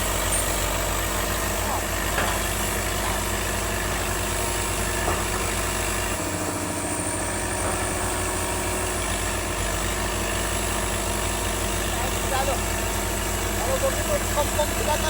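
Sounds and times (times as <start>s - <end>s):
diesel excavator engines running: 0.0s - 15.0s.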